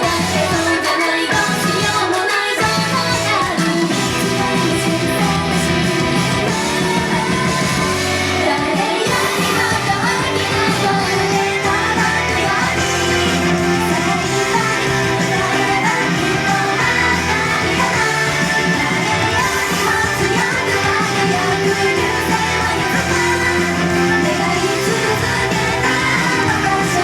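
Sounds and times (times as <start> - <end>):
live pop singing with band: 0.0 - 27.0.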